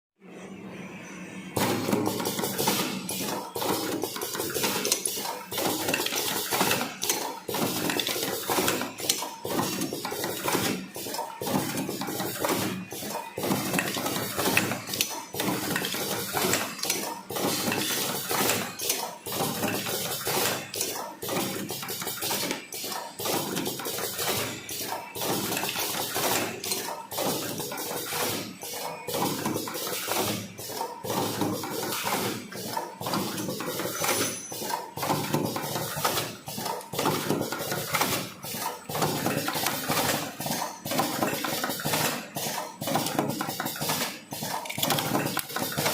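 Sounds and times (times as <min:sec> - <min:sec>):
machine metallic clatter: 0:01.6 - 0:45.9.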